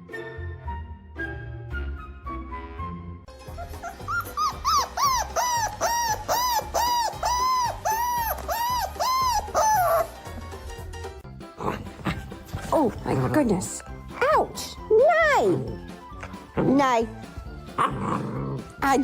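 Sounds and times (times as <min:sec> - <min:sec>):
background music: 0:00.0 - 0:19.0
dog whining yelps: 0:03.5 - 0:10.2.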